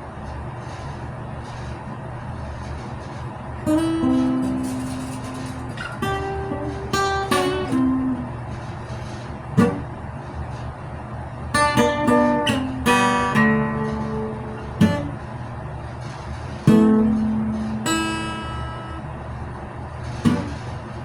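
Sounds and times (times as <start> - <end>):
acoustic guitar picked and strummed: 3.6 - 10.4, 11.4 - 21.0.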